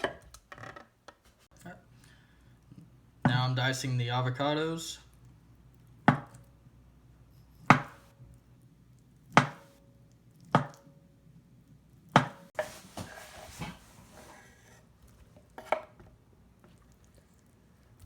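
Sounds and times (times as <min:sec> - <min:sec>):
knife chopping on cutting board: 0:07.7 - 0:08.1, 0:09.4 - 0:09.8, 0:10.6 - 0:10.8, 0:12.2 - 0:12.7
soft rustle: 0:12.6 - 0:15.7.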